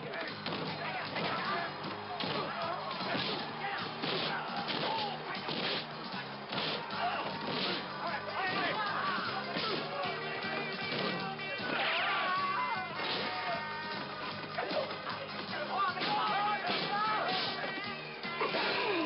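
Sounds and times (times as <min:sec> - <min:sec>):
background music: 0:00.0 - 0:19.0
punch whacks and crashes: 0:02.2 - 0:03.4, 0:04.0 - 0:05.8, 0:10.8 - 0:11.2, 0:16.0 - 0:17.7.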